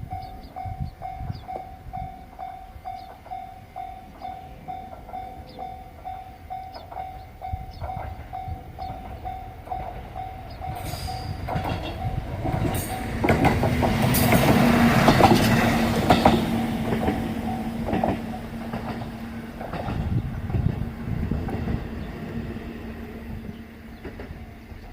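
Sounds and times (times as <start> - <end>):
train engine hum: 0.0 - 24.9
wheels clattering over rail joints: 2.9 - 21.8.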